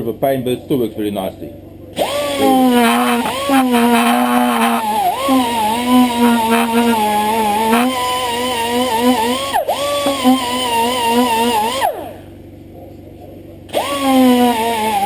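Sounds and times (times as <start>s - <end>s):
air tool wire brush whine: 2.0s - 12.4s, 13.7s - 15.0s.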